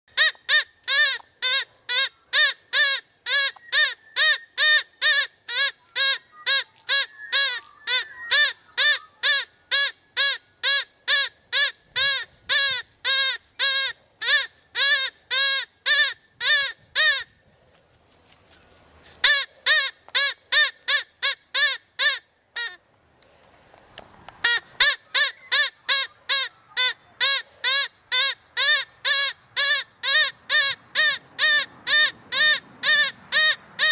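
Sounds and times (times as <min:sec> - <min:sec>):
electronic game caller squeaky calls: 0:00.2 - 0:16.1, 0:24.5 - 0:33.9.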